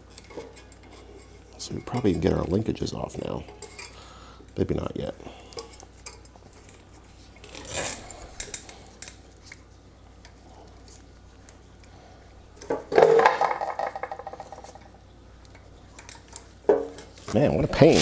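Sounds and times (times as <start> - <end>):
metal parts scraping: 7.4 - 9.2.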